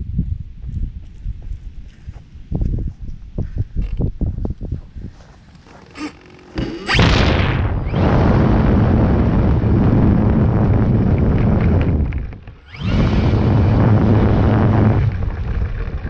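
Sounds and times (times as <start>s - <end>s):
electric motor and propeller whine: 5.2s - 16.0s.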